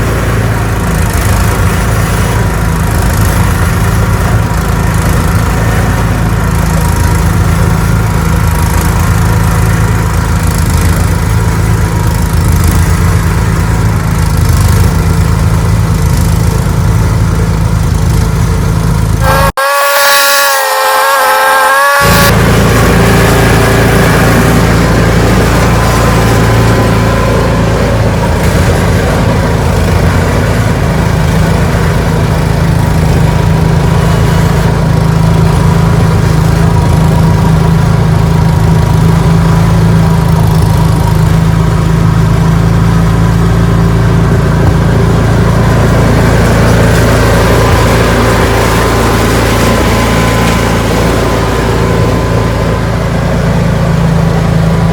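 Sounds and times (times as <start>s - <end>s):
snowblower engine running: 0.0s - 54.9s.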